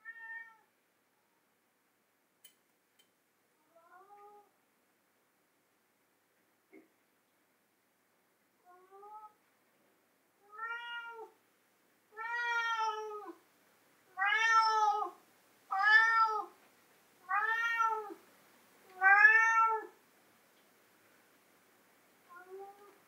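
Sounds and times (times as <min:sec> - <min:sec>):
cat meowing: 0:00.0 - 0:00.7, 0:03.6 - 0:04.5, 0:08.6 - 0:09.4, 0:10.4 - 0:11.4, 0:12.1 - 0:13.4, 0:14.1 - 0:16.6, 0:17.2 - 0:18.2, 0:18.9 - 0:20.0, 0:22.3 - 0:23.0.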